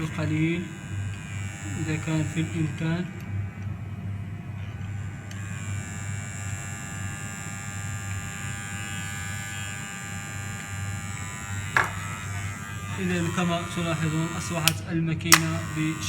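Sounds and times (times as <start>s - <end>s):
electric hair clipper buzzing: 0.0s - 16.0s
sharp click: 14.4s - 16.0s.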